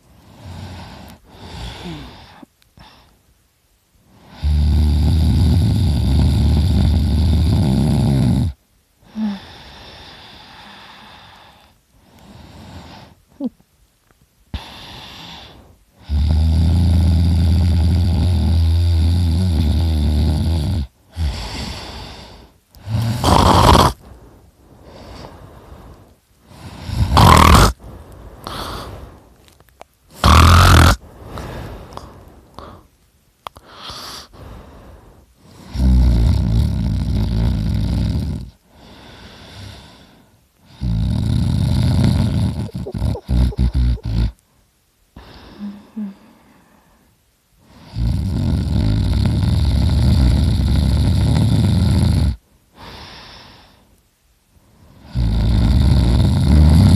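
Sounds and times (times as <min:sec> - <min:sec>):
man snoring loudly: 0:04.2 - 0:09.6, 0:14.6 - 0:22.0, 0:22.8 - 0:24.0, 0:26.6 - 0:27.8, 0:30.2 - 0:31.0, 0:35.7 - 0:38.6, 0:40.7 - 0:44.4, 0:47.7 - 0:52.4, 0:55.0 - 0:56.9.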